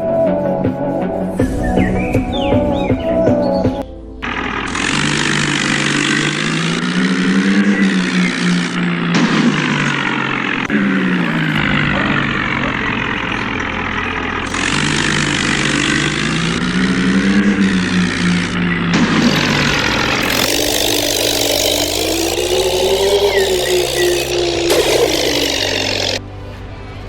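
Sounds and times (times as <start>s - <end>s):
tractor engine revving: 4.2s - 26.4s
loud hiss: 19.2s - 26.2s.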